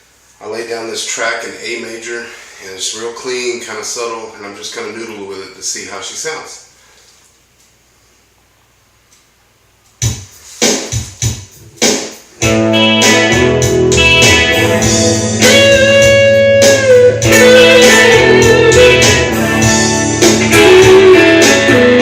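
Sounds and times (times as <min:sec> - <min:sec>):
soft-rock backing track: 0:11.7 - 0:22.0
electric guitar: 0:12.4 - 0:22.0.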